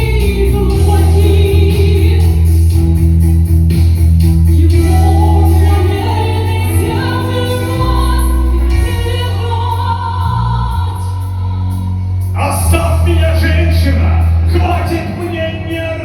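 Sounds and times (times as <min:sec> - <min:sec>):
deep bass line: 0:00.0 - 0:16.0
woman singing long gliding notes: 0:04.6 - 0:12.0.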